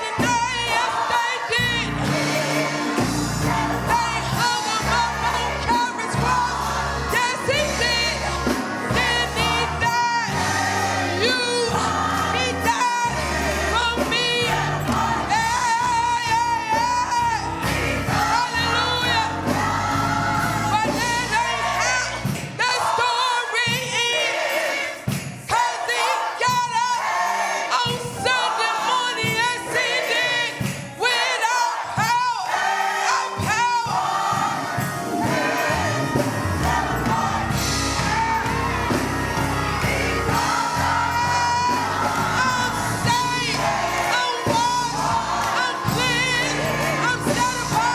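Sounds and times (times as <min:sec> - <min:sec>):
instrumental accompaniment: 0:00.0 - 0:23.0, 0:32.5 - 0:47.9
choir singing gospel: 0:00.0 - 0:47.9
sustained low bass notes: 0:35.7 - 0:44.1.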